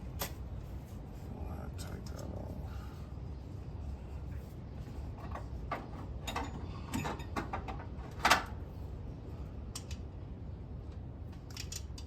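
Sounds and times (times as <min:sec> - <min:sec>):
metal parts clicking and clinking: 0:11.5 - 0:12.0.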